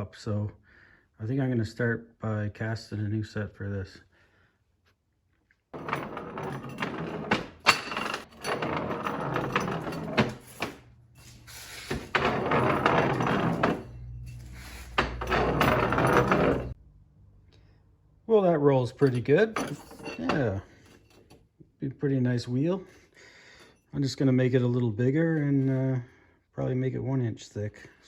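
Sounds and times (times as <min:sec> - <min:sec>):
wheel scraping and rolling: 0:05.8 - 0:16.8.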